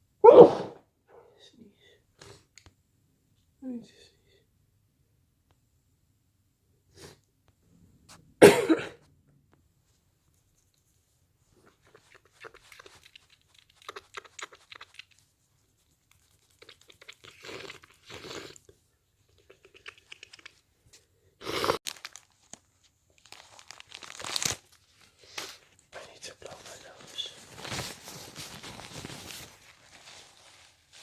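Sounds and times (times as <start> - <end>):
paper tissues crinkling and tearing: 21.8 - 31.0.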